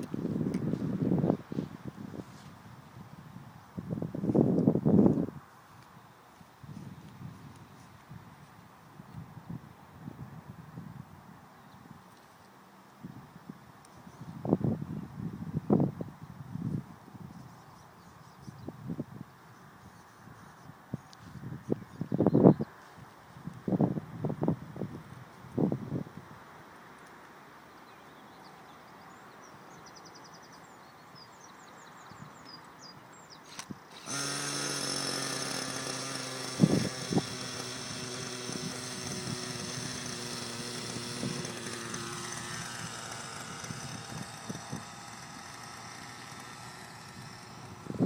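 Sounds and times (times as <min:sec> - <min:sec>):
model helicopter engine running: 0:33.5 - 0:48.0.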